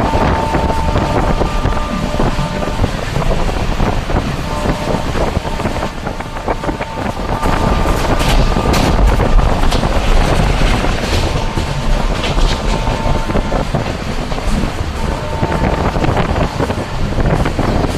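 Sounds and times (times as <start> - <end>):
train rumbling on track: 0.0 - 17.9
sharp track clicks: 0.1 - 17.9.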